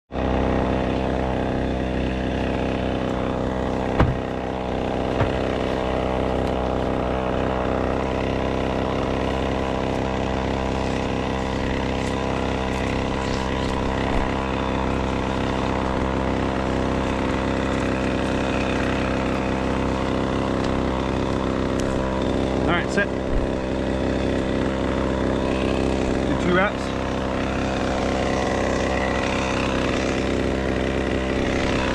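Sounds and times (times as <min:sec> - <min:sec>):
engine running steadily: 0:00.1 - 0:31.9
brief knocks: 0:03.9 - 0:04.3, 0:05.2 - 0:05.6.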